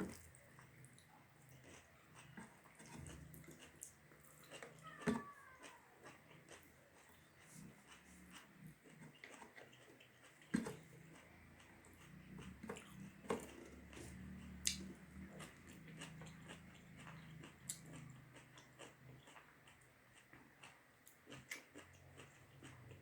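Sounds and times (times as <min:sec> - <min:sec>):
person chewing food: 0:00.0 - 0:23.0
wet clicks and lip smacks: 0:14.6 - 0:19.9.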